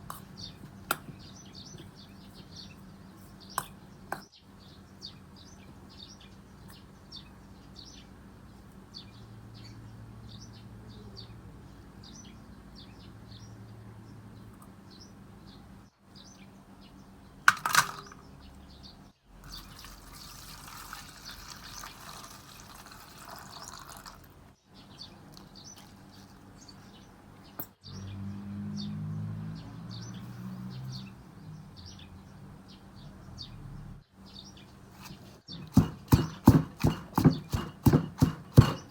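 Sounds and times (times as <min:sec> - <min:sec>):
sharp clatter: 0:17.5 - 0:18.3.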